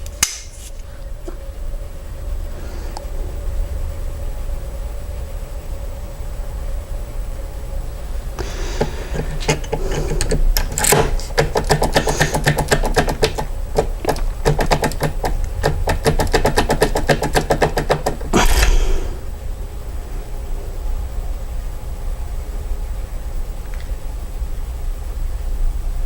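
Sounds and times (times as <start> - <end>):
key clicking and rattling in lock: 8.8 - 18.7.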